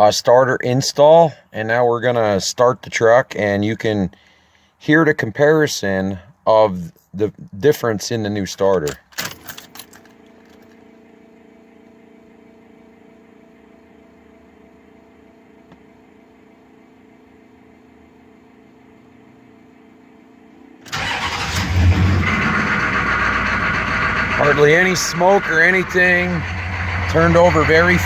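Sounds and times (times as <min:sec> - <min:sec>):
faint steady hum: 0:00.0 - 0:20.9
diesel engine running: 0:20.4 - 0:28.0
starter cranking diesel engine: 0:20.8 - 0:28.0.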